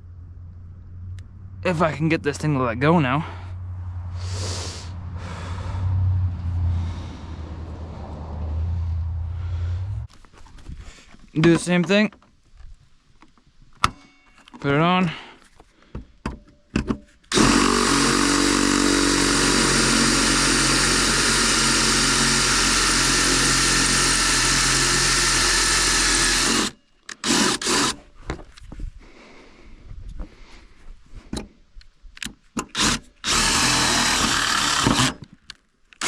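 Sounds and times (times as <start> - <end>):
power drill drilling out rivet: 17.3 - 28.0, 32.6 - 35.4.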